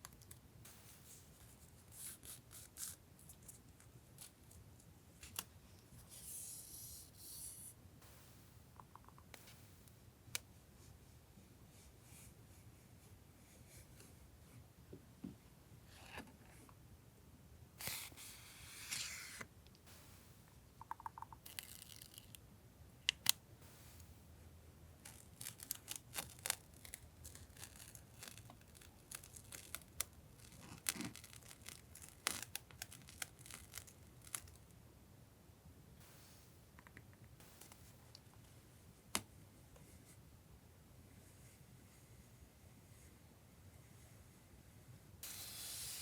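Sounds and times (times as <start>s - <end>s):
packaging tearing and rustling: 21.5s - 22.4s, 25.1s - 34.7s.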